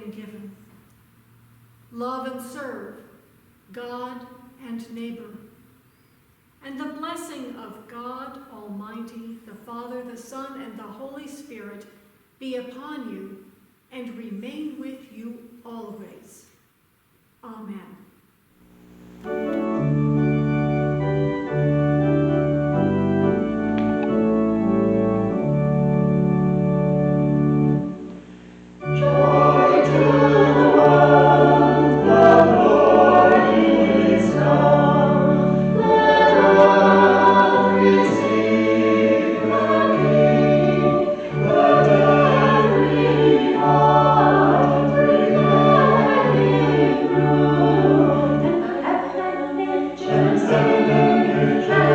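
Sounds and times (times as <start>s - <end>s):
church organ chords: 18.6s - 51.9s
choir singing a hymn: 28.8s - 51.9s.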